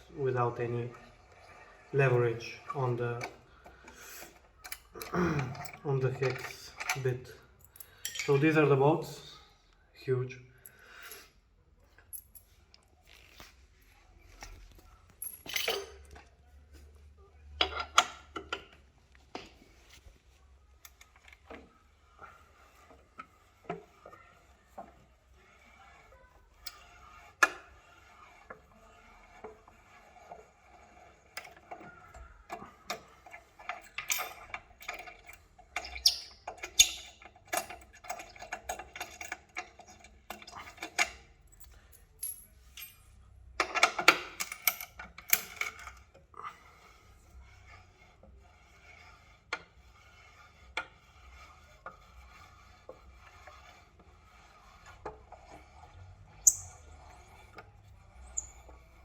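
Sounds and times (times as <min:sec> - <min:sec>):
metal tools and bolts clinking: 0:04.2 - 0:08.8, 0:11.9 - 0:12.6, 0:15.1 - 0:16.3, 0:33.6 - 0:46.0.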